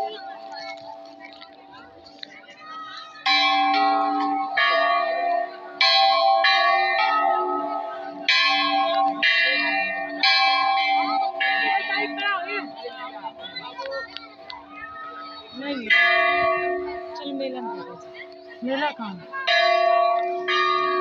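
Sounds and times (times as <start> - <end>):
metal temple bell clanging: 0.0 - 2.2, 3.1 - 21.0.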